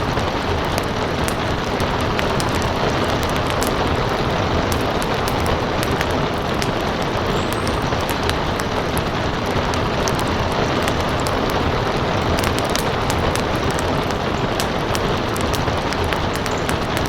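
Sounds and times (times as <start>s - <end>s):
rain hiss: 0.0s - 17.0s
wood fire crackling: 0.0s - 17.0s.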